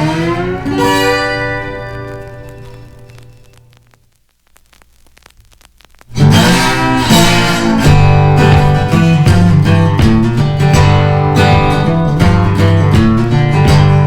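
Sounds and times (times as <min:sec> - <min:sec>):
strummed guitar music: 0:00.0 - 0:03.8, 0:06.1 - 0:14.0
background music: 0:06.2 - 0:14.0.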